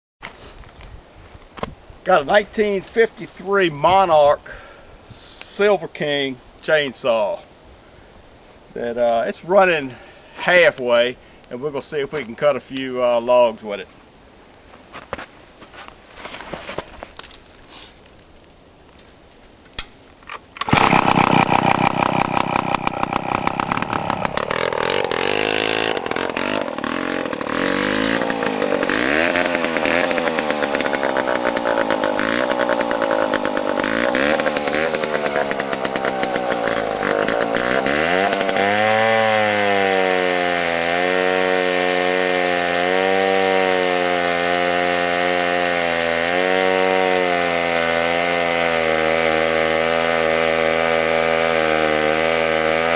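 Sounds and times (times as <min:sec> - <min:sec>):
two-stroke chainsaw engine running: 0:20.6 - 0:52.9.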